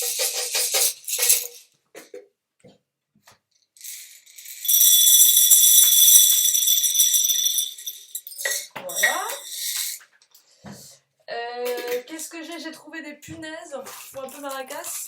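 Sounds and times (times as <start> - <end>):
chickpeas rattling in a container: 0.0 - 1.7, 3.8 - 10.0, 13.9 - 15.0.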